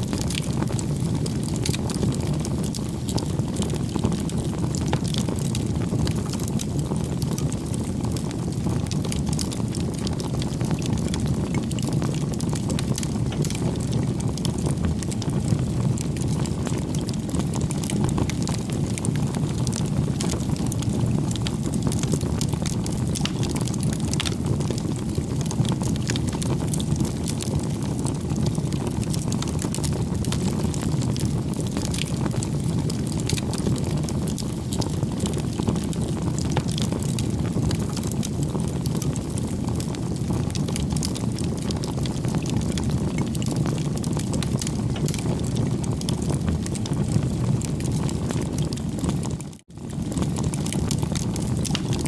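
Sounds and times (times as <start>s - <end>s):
campfire crackling: 0.0s - 52.0s
wood popping and snapping: 13.0s - 13.6s, 51.4s - 52.0s.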